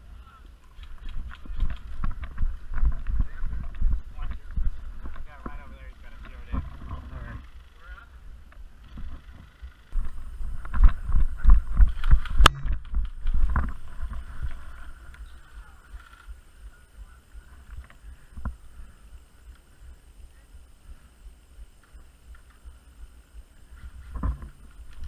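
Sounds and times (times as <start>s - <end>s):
thumps and rustling on microphone: 0.8s - 7.4s, 8.8s - 16.4s, 21.6s - 25.0s
wind rumble on microphone: 1.0s - 7.4s, 8.9s - 19.1s, 22.6s - 25.0s.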